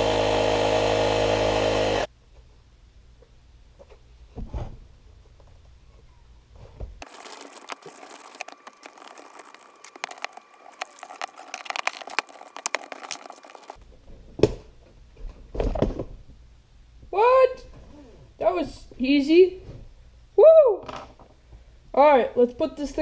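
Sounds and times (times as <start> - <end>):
rustling and crinkling with clicks: 5.2 - 16.2.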